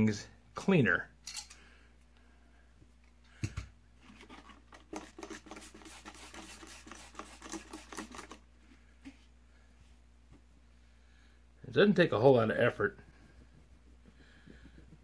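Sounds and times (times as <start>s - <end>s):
scratchy cleaning strokes on pliers: 5.1s - 8.3s.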